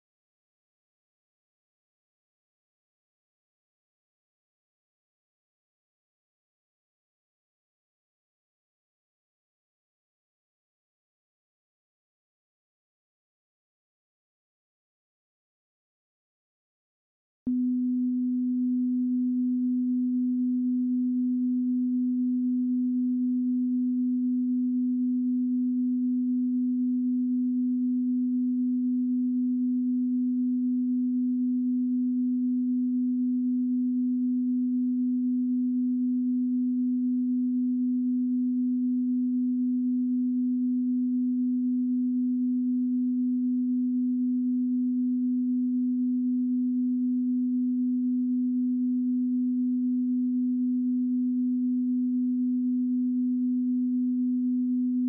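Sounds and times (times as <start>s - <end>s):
steady low electronic sine tone: 17.5s - 55.0s.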